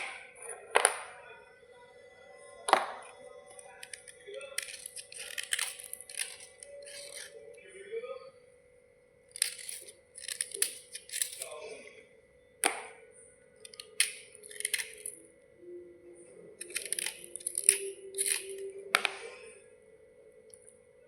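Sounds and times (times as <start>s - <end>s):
faint steady hum: 0.0s - 21.0s
slate bars cracking: 3.7s - 7.4s, 9.3s - 11.6s, 13.6s - 15.2s, 16.6s - 19.4s
crisp crackling and crunching: 3.8s - 7.4s, 13.7s - 15.2s, 16.6s - 18.6s.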